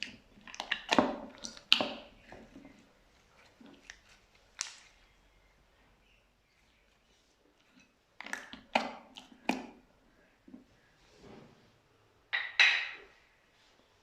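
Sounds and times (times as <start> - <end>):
slime squelching and popping: 0.0 - 2.7, 3.5 - 5.0, 8.2 - 9.9.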